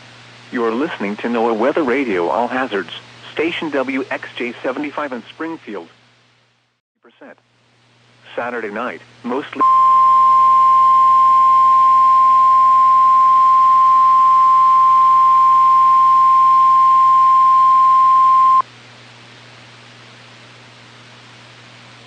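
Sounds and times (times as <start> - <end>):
faint radio hiss: 0.0 - 22.0
steady warning alarm tone: 9.6 - 18.6.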